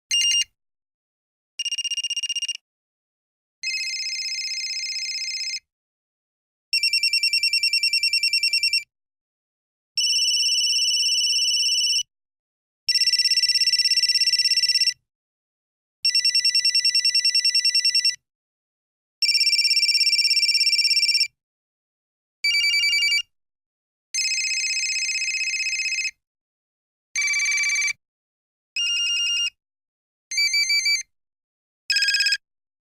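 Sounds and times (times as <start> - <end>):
mobile phone ringing: 0.1 - 0.5, 1.6 - 2.6, 3.6 - 5.6, 6.7 - 8.9, 10.0 - 12.1, 12.9 - 15.0, 16.0 - 18.2, 22.4 - 23.3, 24.2 - 26.2, 27.2 - 28.0, 28.8 - 29.6, 30.3 - 31.1, 31.9 - 32.4.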